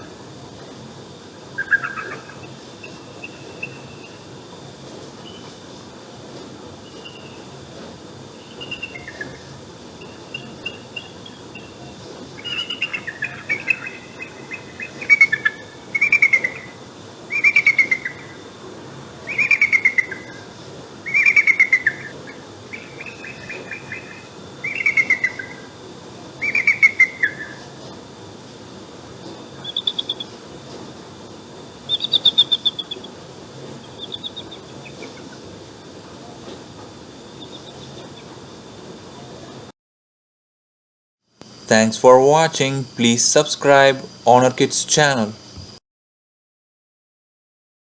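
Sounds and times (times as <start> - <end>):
eagle calling: 41.5 - 45.8.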